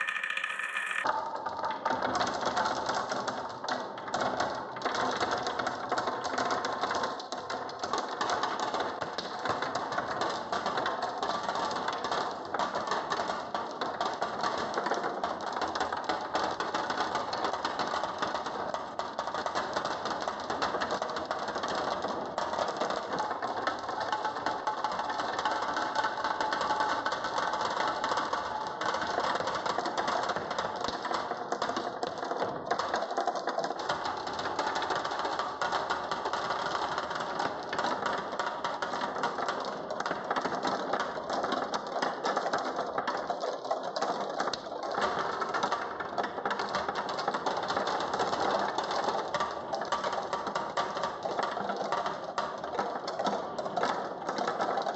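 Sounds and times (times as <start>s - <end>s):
marbles clacking down wooden run: 0.0s - 1.6s.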